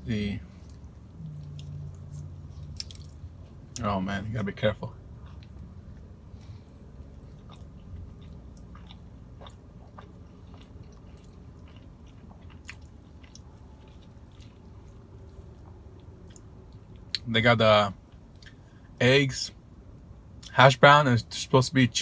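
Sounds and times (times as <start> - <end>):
low steady hum: 0.0 - 22.0
person chewing food: 0.6 - 3.6, 5.0 - 17.2.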